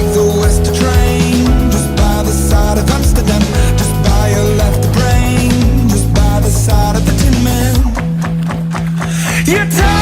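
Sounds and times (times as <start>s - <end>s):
guitar rock music with drums: 0.0s - 10.0s.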